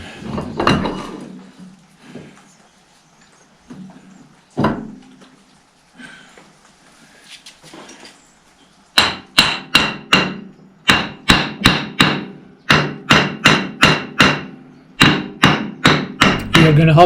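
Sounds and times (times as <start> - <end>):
hammer striking metal: 9.0 - 17.0.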